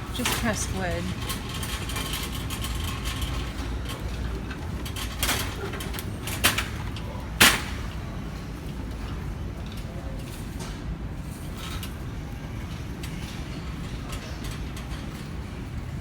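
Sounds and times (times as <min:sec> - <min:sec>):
store rumble and hum: 0:00.0 - 0:16.0.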